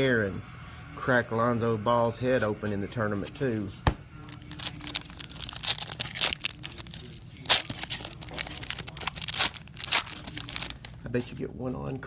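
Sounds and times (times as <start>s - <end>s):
wrappers crinkling: 4.2s - 11.1s
card packs being torn open: 4.3s - 10.9s.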